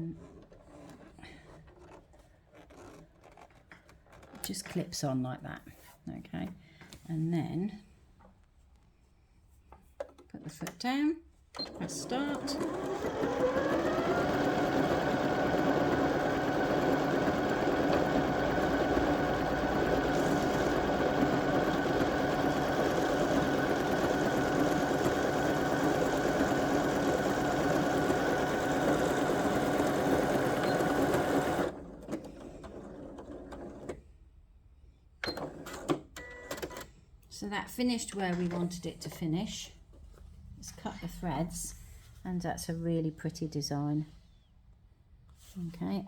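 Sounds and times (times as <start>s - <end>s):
sewing machine running: 11.6s - 34.0s.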